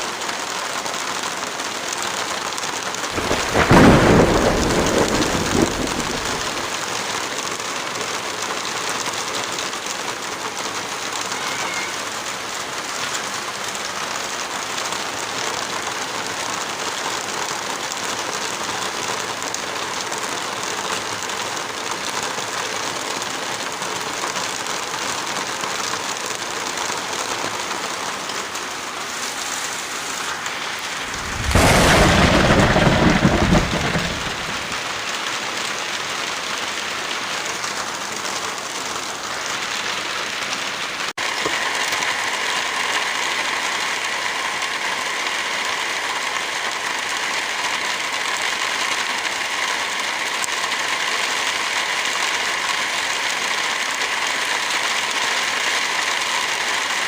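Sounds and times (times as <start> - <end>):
steady rain falling: 0.0 - 57.0
thunder clap: 3.2 - 6.7, 30.9 - 35.2.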